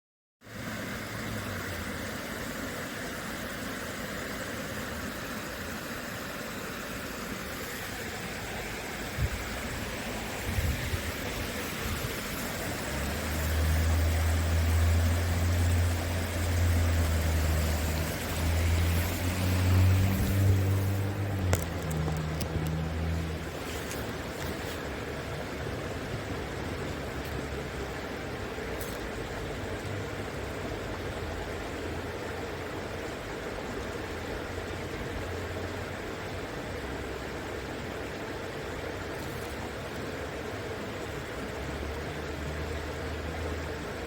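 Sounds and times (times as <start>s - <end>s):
river water flowing: 0.4s - 44.0s.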